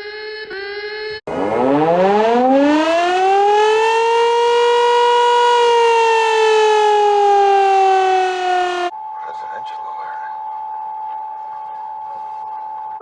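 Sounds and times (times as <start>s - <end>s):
civil defense siren wailing: 0.0s - 9.0s.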